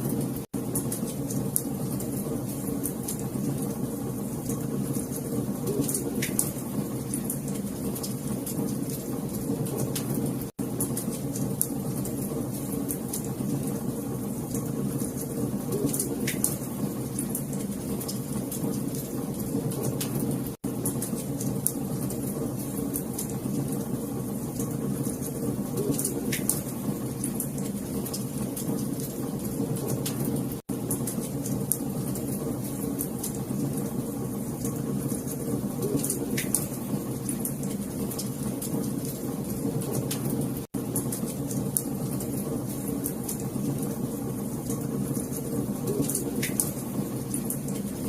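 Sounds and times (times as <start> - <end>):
wood fire crackling and popping: 0.0 - 48.0.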